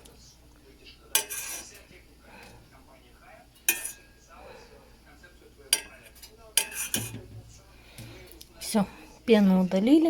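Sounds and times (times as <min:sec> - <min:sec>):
metal spoon clinking on pot: 0:01.1 - 0:01.8, 0:03.6 - 0:04.2, 0:05.7 - 0:07.2.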